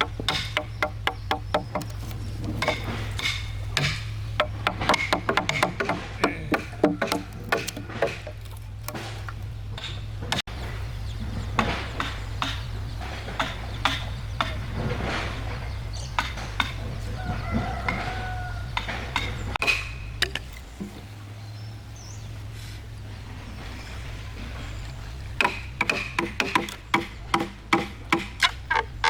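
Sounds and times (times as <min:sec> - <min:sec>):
sharp knocks and taps on timber: 0:00.0 - 0:10.5, 0:11.5 - 0:21.1, 0:25.3 - 0:29.0
steady low hum: 0:00.0 - 0:29.0
rooster crowing: 0:06.2 - 0:07.9, 0:16.9 - 0:19.4.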